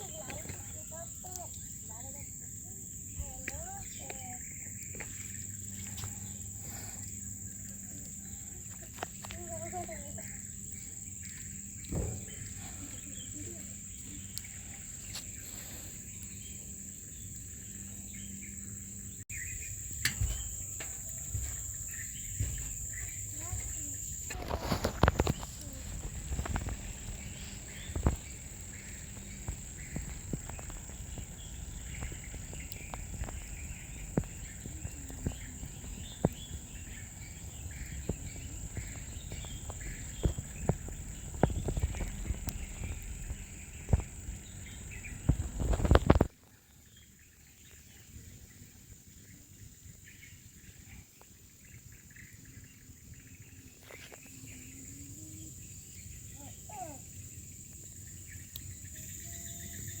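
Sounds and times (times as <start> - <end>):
low rumble: 19.5 - 46.3.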